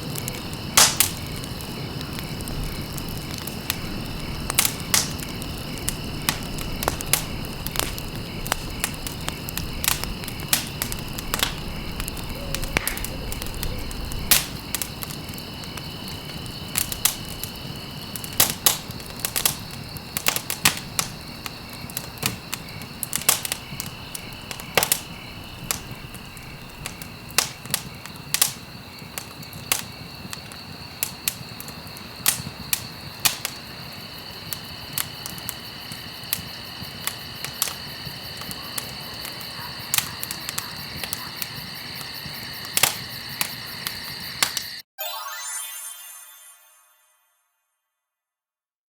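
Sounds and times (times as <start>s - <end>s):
low rumble of flames: 0.0s - 28.5s
campfire crackling and popping: 0.0s - 45.2s
steady high-pitched tone: 45.0s - 47.5s.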